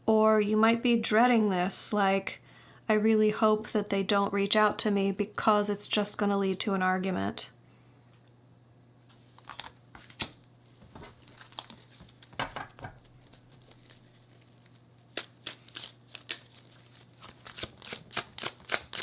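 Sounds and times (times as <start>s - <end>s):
cards being shuffled: 9.1s - 19.0s.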